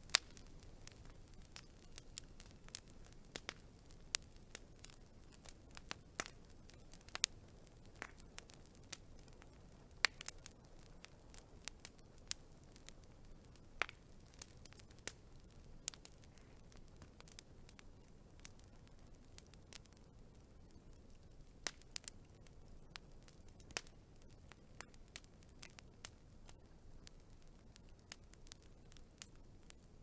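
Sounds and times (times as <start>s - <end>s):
faint low hiss: 0.0s - 30.0s
wood fire crackling: 0.0s - 30.0s.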